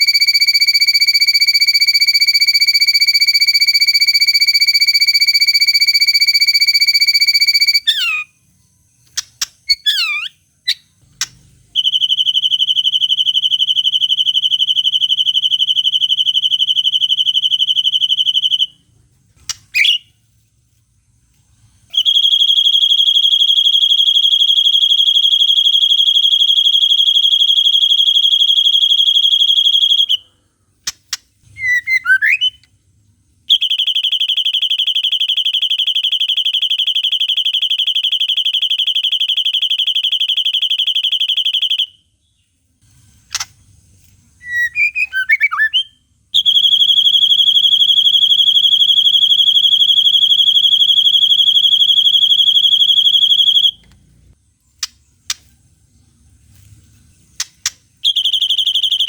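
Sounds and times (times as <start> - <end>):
bird singing buzzy trills: 7.3 - 14.8.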